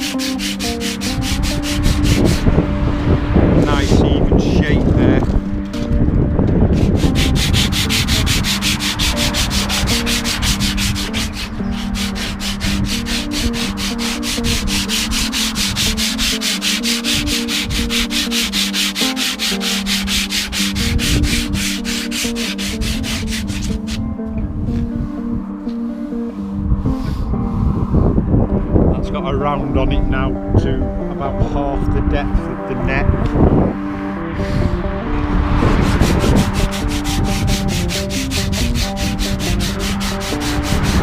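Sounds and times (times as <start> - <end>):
sandpaper rubbing on wood: 0.0 - 2.6, 6.7 - 24.0, 35.6 - 41.0.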